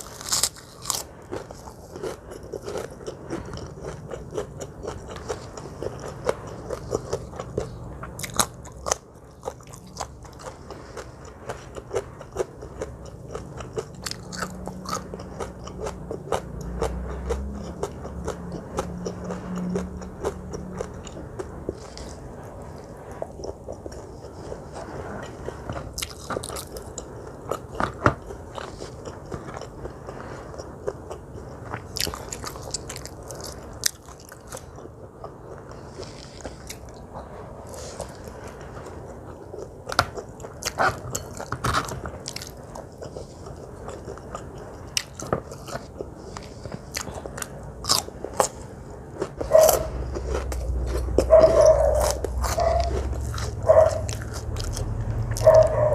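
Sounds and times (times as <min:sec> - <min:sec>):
chewing crunchy food: 0:00.0 - 0:55.9.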